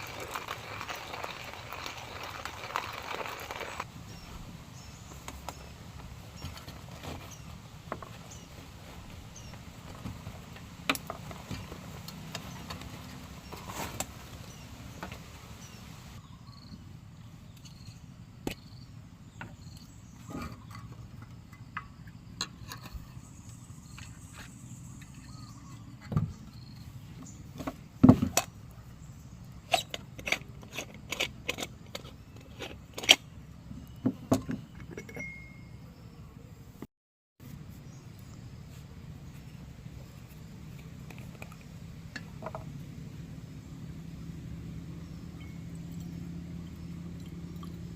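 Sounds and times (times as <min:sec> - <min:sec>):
low outdoor background: 0:00.0 - 0:47.9.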